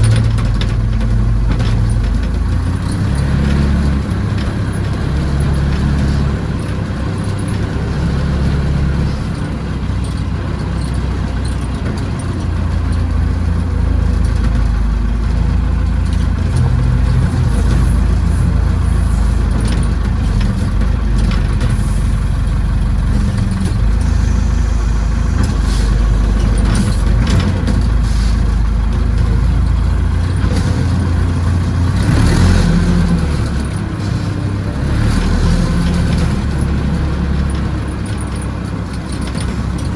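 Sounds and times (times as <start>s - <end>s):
backhoe engine running: 0.0s - 39.9s
clanks and knocks: 14.1s - 39.9s.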